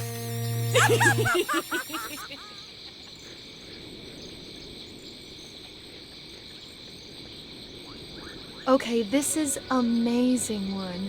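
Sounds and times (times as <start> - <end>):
short rising chirps: 0.0 - 2.6
crickets chirping: 0.2 - 11.0.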